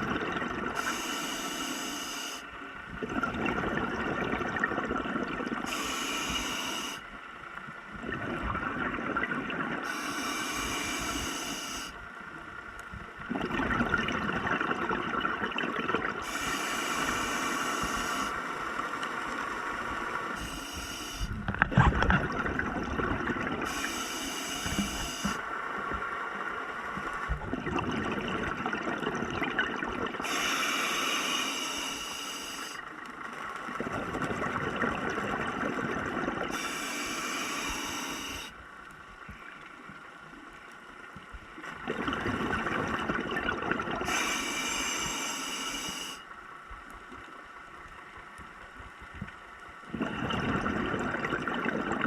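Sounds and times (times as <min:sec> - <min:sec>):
gurgling exhaled bubbles: 0:00.0 - 0:01.0, 0:02.9 - 0:06.9, 0:08.0 - 0:11.6, 0:13.2 - 0:18.3, 0:21.2 - 0:25.4, 0:27.3 - 0:31.4, 0:33.7 - 0:38.5, 0:41.7 - 0:45.2, 0:49.9 - 0:52.0
regulator hissing inhale: 0:00.8 - 0:02.5, 0:05.6 - 0:07.1, 0:09.8 - 0:12.0, 0:16.2 - 0:18.5, 0:20.3 - 0:21.4, 0:23.6 - 0:25.5, 0:30.2 - 0:32.9, 0:36.5 - 0:38.6, 0:44.0 - 0:46.3.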